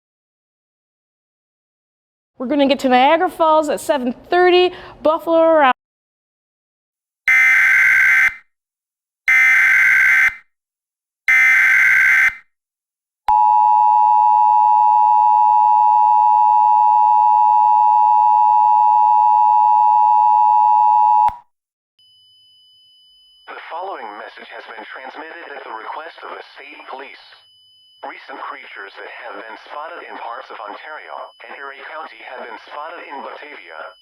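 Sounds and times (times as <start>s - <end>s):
digital data bursts: 28.0s - 34.0s.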